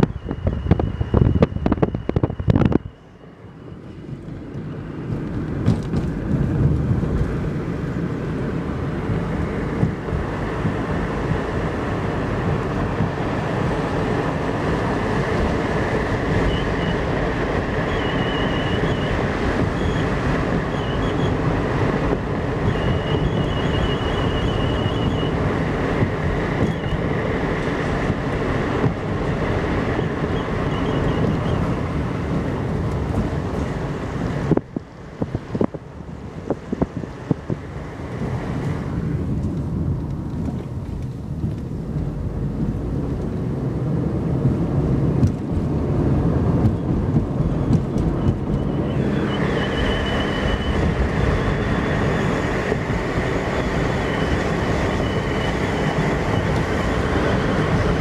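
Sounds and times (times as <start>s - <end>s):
faint brake whistle: 0.0s - 4.2s, 16.4s - 21.4s, 22.6s - 25.4s, 26.6s - 27.1s, 29.9s - 31.8s, 47.4s - 52.8s, 53.4s - 57.6s
road and tyre noise: 0.0s - 58.0s.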